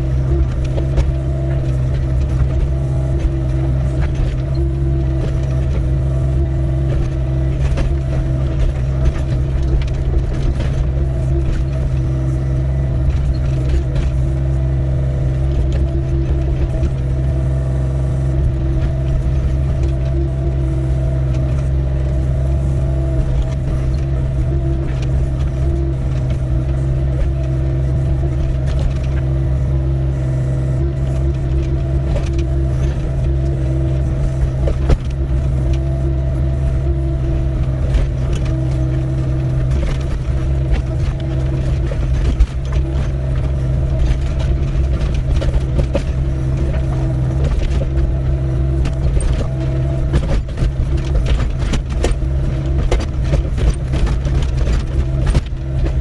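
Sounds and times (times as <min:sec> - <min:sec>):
excavator diesel engine: 0:00.0 - 0:56.0.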